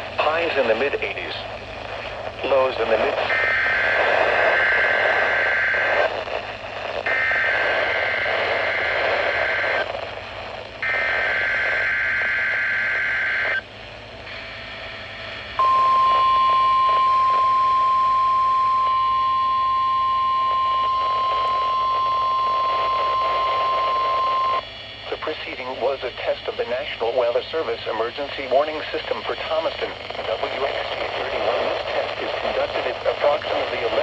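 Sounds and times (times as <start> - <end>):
radio hiss: 0.0 - 34.0
steady warning alarm tone: 3.3 - 5.8, 10.8 - 13.6, 15.6 - 24.6.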